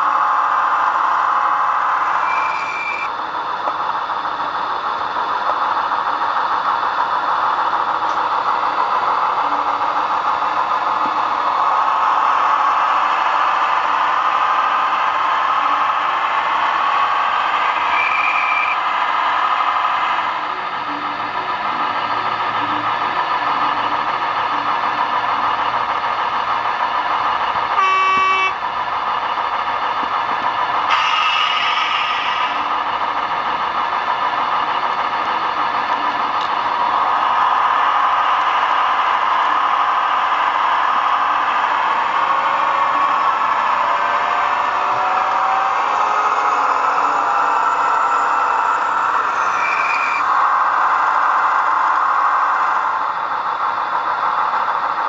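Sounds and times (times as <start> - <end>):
model train engine sound: 0.0 - 55.0
short high beep: 2.3 - 3.1.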